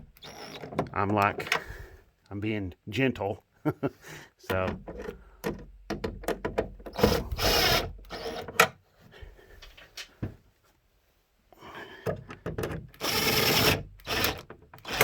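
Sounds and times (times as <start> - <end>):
rasping power tool bursts: 13.0 - 15.0.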